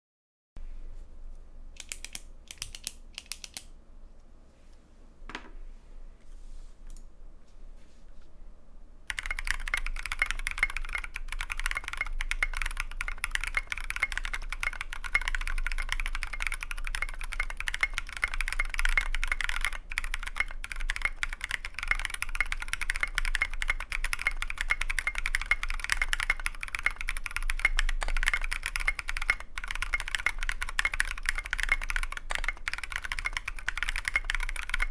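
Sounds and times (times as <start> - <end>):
mechanical keyboard typing: 1.8 - 3.7, 9.1 - 34.9.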